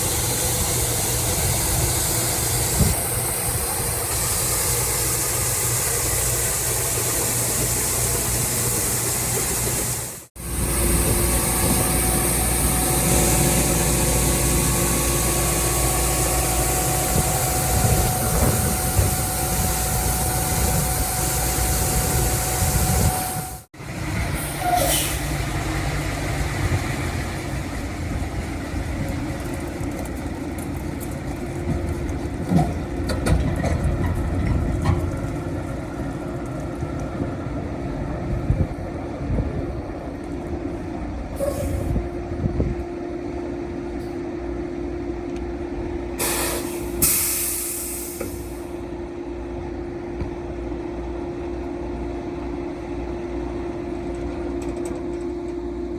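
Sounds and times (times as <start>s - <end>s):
steady machinery whine: 0.0s - 24.0s
combine harvester engine drone: 0.0s - 55.9s.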